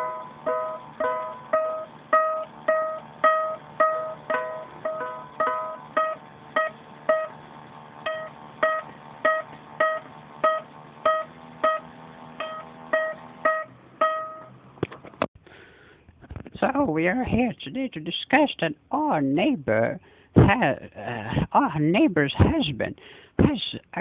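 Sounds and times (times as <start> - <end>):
plucked string instrument notes: 0.0 - 7.4, 8.0 - 14.6.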